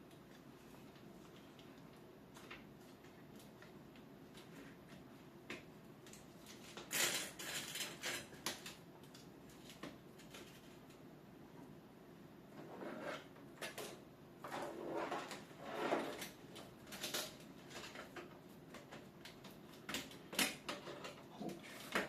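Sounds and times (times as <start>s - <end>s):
rustling and scraping: 12.5s - 19.9s.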